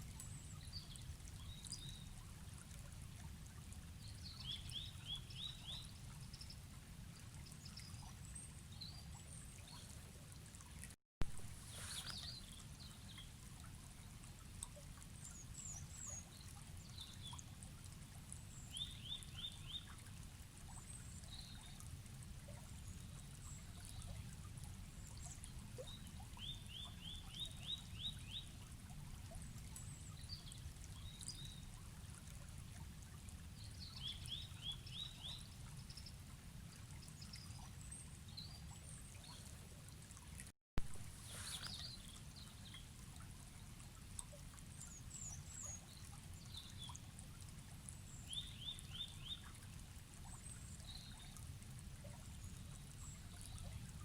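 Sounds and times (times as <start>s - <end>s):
forest stream flowing: 0.0s - 54.0s
bird chirps: 11.7s - 12.4s, 41.2s - 42.0s.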